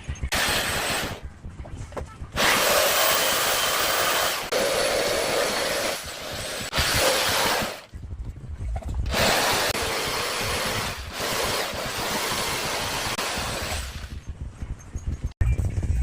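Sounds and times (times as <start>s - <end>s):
power tool cutting wood: 2.4s - 7.8s, 9.1s - 14.1s.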